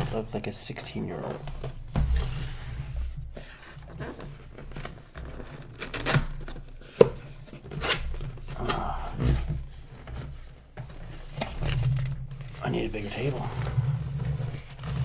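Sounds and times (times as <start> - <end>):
cardboard scraping and cutting: 1.2 - 15.0.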